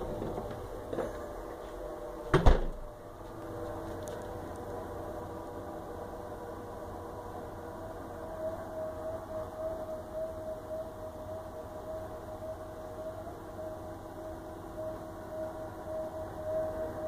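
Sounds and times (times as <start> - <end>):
loud thump: 2.3 - 2.9.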